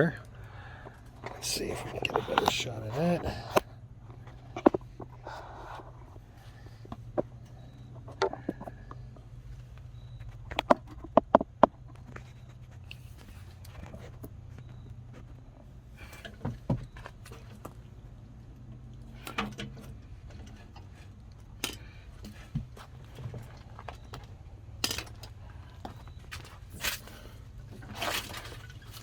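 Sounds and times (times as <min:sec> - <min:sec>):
low steady hum: 0:00.0 - 0:29.0
handling clicks and knocks: 0:00.8 - 0:05.2.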